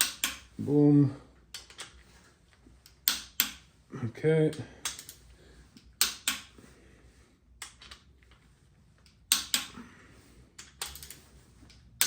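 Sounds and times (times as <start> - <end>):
metallic tool clicks and knocks: 0.0 - 0.5, 9.3 - 9.8.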